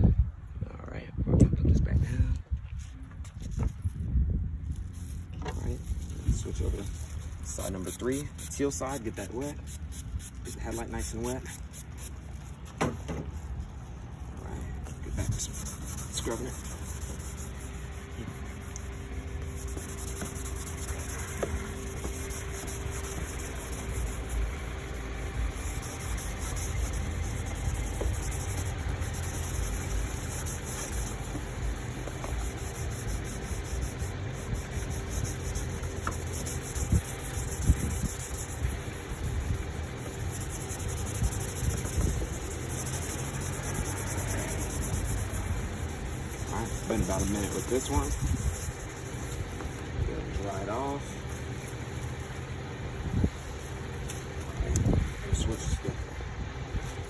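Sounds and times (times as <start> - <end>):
sandpaper rubbing on plastic: 4.7 - 56.0, 56.7 - 57.0
low rumble: 13.2 - 57.0.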